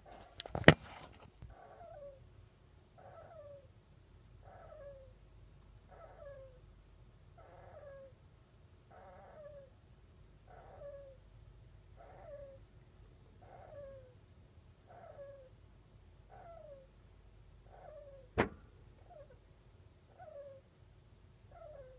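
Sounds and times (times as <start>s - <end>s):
hamster snoring: 5.9s - 6.4s, 8.9s - 9.7s, 12.0s - 12.6s.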